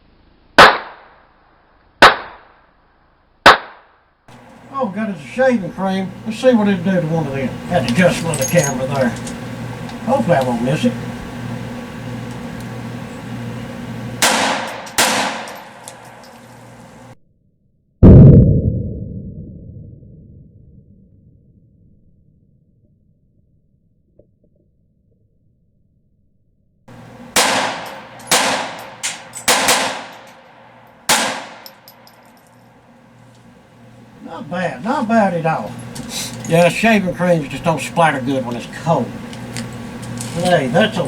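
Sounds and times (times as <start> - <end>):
pistol shots with echo: 0.6 - 1.2, 2.0 - 2.5, 3.5 - 3.9, 14.2 - 16.3, 27.4 - 31.9.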